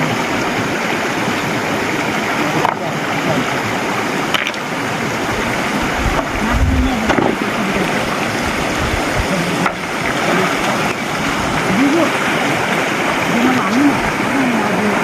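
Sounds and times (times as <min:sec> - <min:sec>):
stream water rushing over stones: 0:00.0 - 0:15.0
low thumps: 0:05.3 - 0:11.6.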